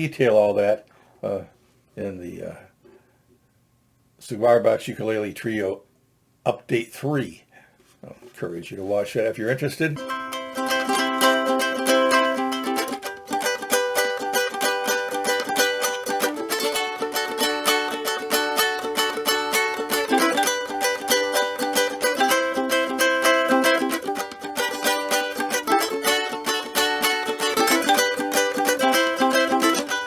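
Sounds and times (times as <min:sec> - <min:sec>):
ukulele strumming chords: 0:09.9 - 0:30.0.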